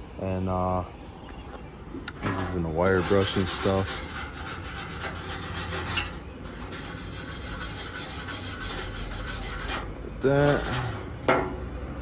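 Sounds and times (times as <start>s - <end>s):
wire brush scraping steel: 2.1s - 11.6s.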